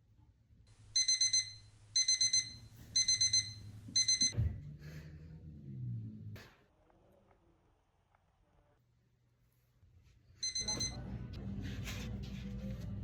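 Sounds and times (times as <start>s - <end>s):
alarm clock beeping: 1.0s - 4.4s, 10.4s - 11.0s.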